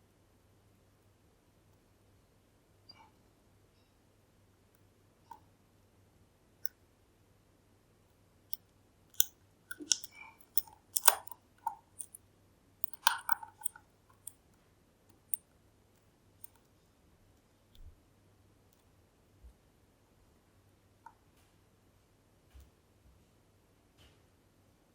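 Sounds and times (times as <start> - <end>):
lock picking tools clicking: 8.5 - 12.2, 12.8 - 14.4.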